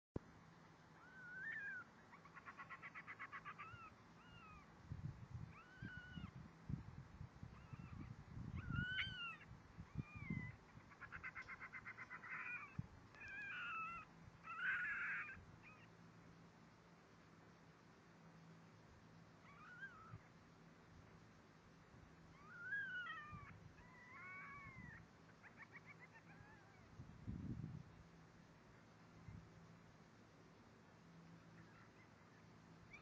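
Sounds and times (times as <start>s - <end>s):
fox kit whining chirps: 1.0s - 4.7s, 5.5s - 6.4s, 7.5s - 15.9s, 19.4s - 20.3s, 22.3s - 26.9s.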